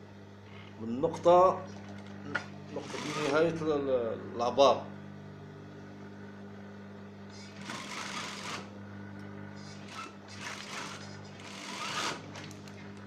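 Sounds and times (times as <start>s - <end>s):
steady hum: 0.0s - 13.0s
sewing machine stitching: 2.8s - 3.4s, 7.4s - 8.7s, 9.7s - 12.6s.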